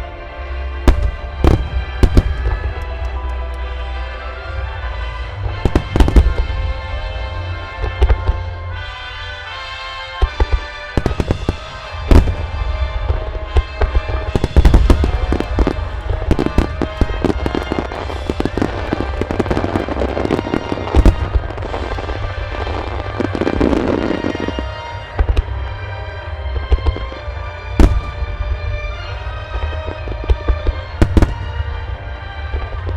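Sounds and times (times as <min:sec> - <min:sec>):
music playing: 0:00.0 - 0:32.9
firework shells bursting: 0:00.9 - 0:03.7, 0:14.4 - 0:22.8
firework crackling: 0:00.9 - 0:03.9, 0:05.6 - 0:08.7, 0:10.3 - 0:32.9.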